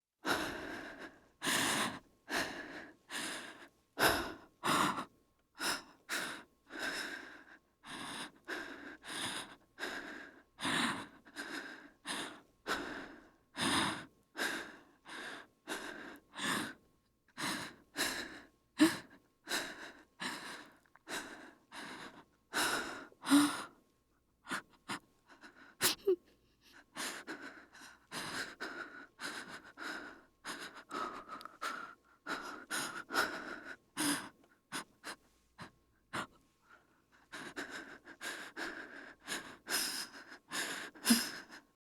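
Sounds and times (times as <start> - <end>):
woman breathing quickly: 0.2 - 23.8, 24.4 - 41.8
woman gasping: 25.8 - 28.0, 38.6 - 41.7.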